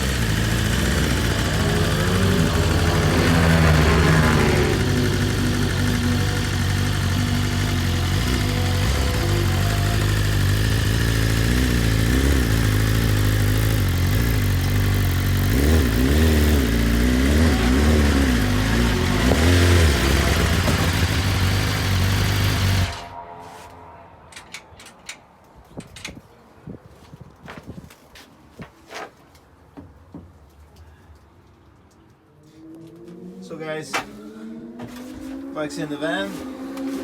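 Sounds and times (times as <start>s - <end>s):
motorcycle engine revving: 0.0s - 23.4s, 32.6s - 37.0s.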